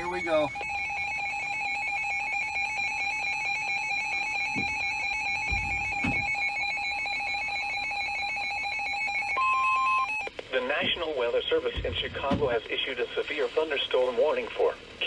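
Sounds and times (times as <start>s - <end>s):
pulsing electronic alarm tone: 0.0s - 10.3s.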